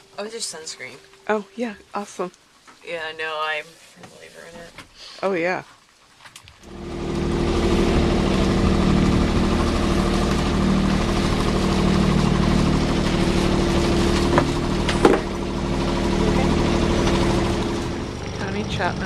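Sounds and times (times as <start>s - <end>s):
boat engine idling: 6.6s - 19.0s.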